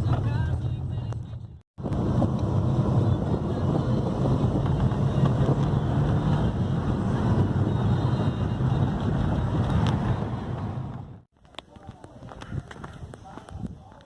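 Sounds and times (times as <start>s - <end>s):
tyre and road rumble: 0.0s - 14.0s.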